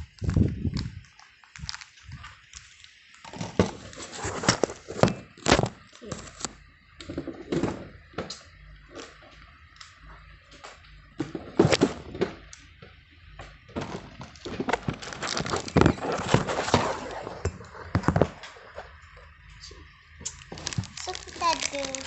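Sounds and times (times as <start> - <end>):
packaging rustling and crinkling: 0.0 - 6.6, 13.8 - 18.9, 20.2 - 22.0.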